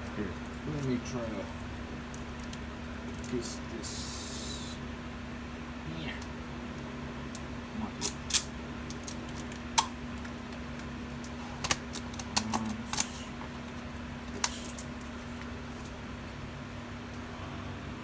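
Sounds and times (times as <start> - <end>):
steady hum: 0.0 - 18.0
plastic packaging clicking: 8.0 - 13.2.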